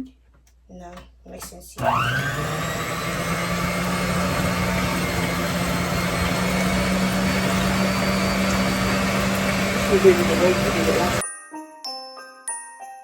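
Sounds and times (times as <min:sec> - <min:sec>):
electric mixer motor whirring: 0:01.8 - 0:11.2.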